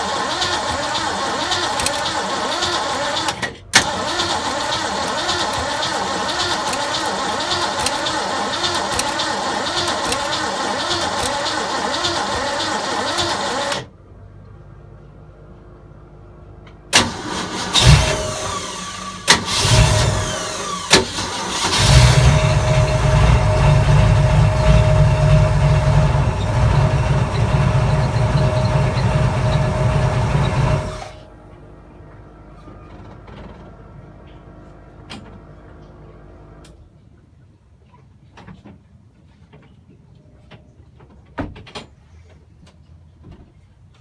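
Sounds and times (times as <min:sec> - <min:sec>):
engine starter cranking: 0:00.0 - 0:13.9, 0:16.9 - 0:31.3
starter clicks: 0:00.4 - 0:12.5.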